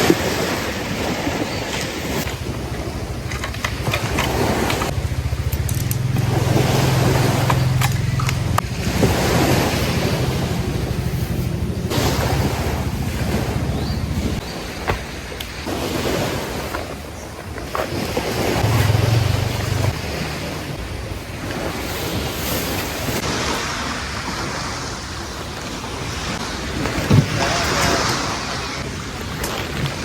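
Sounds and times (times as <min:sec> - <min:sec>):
wind buffeting microphone: 0:00.0 - 0:23.6
sea waves washing onto beach: 0:00.0 - 0:30.0.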